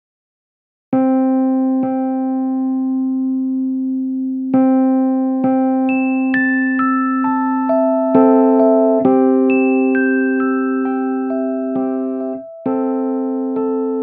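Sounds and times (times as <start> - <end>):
slow electric piano notes: 5.9 - 14.0.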